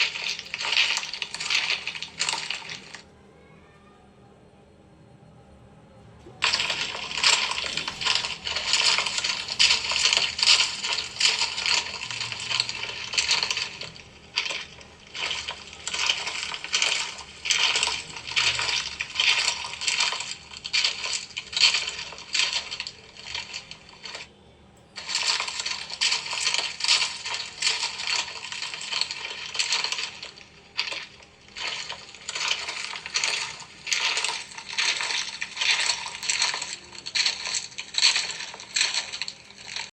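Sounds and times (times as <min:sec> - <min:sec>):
chalk being crushed: 0:00.0 - 0:03.0, 0:06.4 - 0:24.3, 0:25.0 - 0:39.9.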